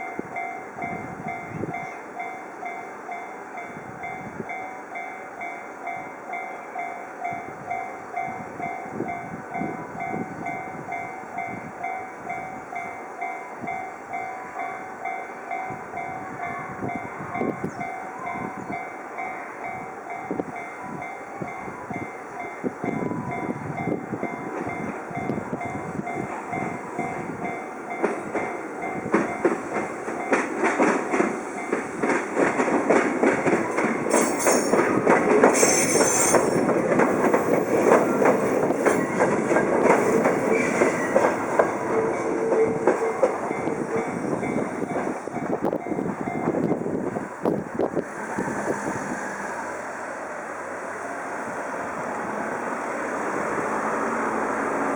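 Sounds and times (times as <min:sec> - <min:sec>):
railroad crossing two-tone ding: 0:00.0 - 0:54.9
train approaching: 0:00.0 - 0:54.9
train wheels clattering: 0:26.4 - 0:46.8.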